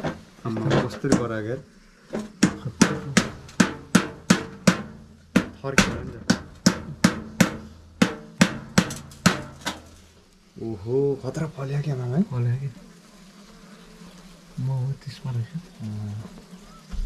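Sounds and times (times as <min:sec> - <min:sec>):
knocking on wooden beehive: 0:00.0 - 0:01.4, 0:02.1 - 0:09.9
steady low hum: 0:00.0 - 0:12.9.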